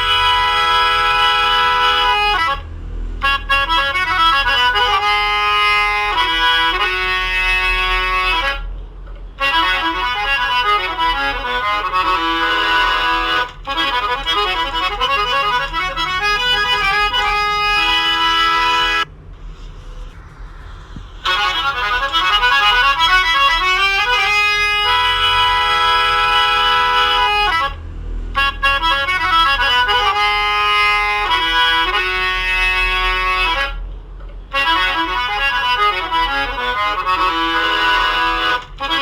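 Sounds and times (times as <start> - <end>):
instrumental background music: 9.4 - 19.1, 21.0 - 27.8.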